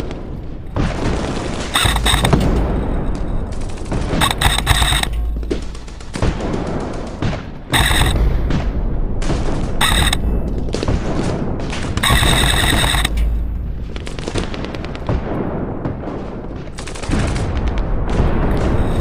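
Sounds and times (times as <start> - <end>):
airsoft gun full-auto bursts: 1.7 - 2.5, 4.2 - 5.3, 7.7 - 8.2, 9.8 - 10.2, 12.0 - 13.2
scattered clicks: 1.7 - 8.4, 9.6 - 10.7, 12.0 - 15.1
heavy low rumble: 1.8 - 16.6.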